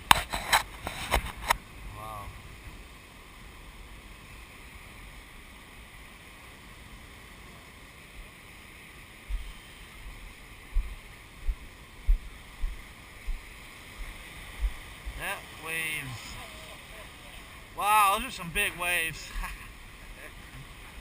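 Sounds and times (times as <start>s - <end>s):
ocean surf breaking: 0.0s - 21.0s
wind buffeting microphone: 9.2s - 15.2s.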